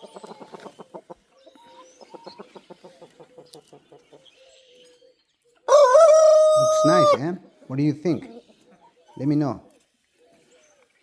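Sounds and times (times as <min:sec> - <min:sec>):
chickens clucking: 0:00.0 - 0:04.3, 0:05.5 - 0:10.5
long steady chicken call: 0:05.7 - 0:07.3.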